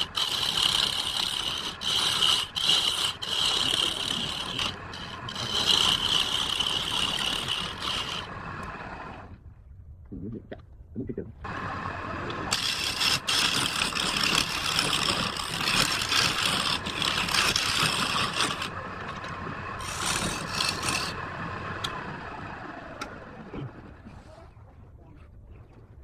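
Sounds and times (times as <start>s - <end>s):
turning tool hissing on wood: 0.0s - 8.8s
lathe motor winding down: 0.0s - 9.4s, 11.4s - 24.0s
wood lathe motor running: 0.0s - 9.4s, 11.5s - 23.8s.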